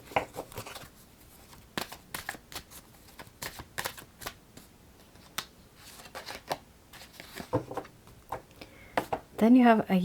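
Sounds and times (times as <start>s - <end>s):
cards being shuffled: 0.2s - 7.8s.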